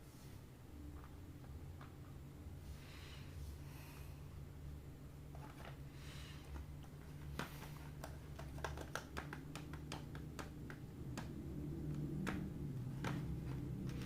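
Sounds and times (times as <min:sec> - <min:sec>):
low steady hum: 0:00.0 - 0:14.0
plastic toys clicking and tapping: 0:06.5 - 0:11.3.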